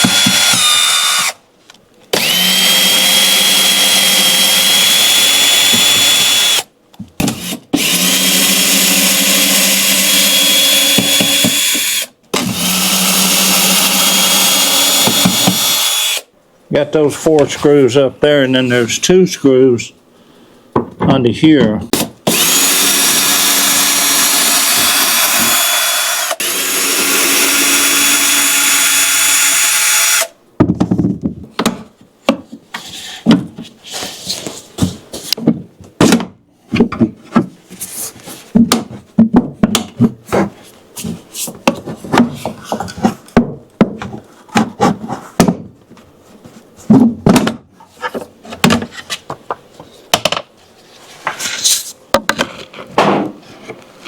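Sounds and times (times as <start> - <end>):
power drill running: 0.0 - 1.4, 2.1 - 6.7, 7.4 - 16.2, 22.3 - 30.3.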